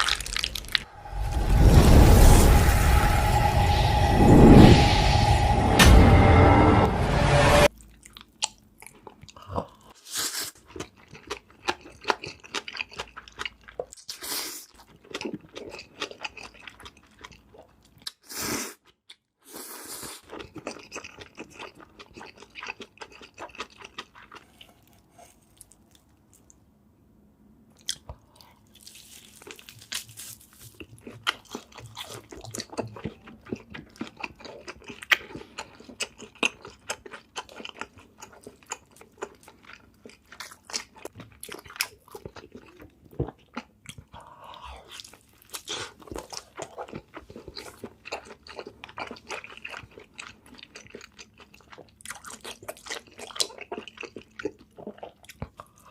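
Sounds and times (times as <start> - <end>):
crunchy bites and chewing: 0.0 - 0.9, 27.8 - 55.9.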